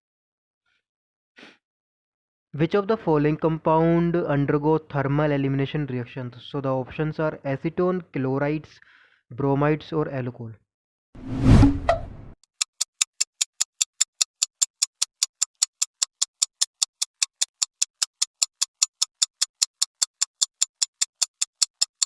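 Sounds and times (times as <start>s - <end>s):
fast timer ticking: 12.5s - 22.0s.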